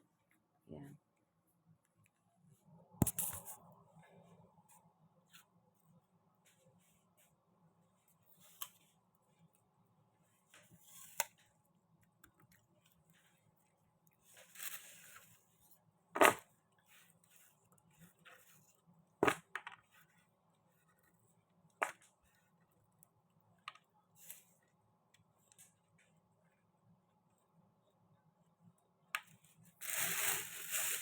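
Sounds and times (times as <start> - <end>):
clicks of objects being handled: 3.0 - 3.6.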